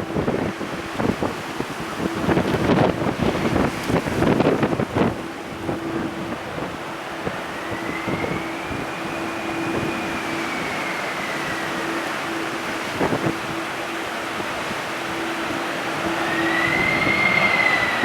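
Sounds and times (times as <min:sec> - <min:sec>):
jet airliner engine whine: 0:00.0 - 0:18.0
strong wind gusting on microphone: 0:00.0 - 0:18.0.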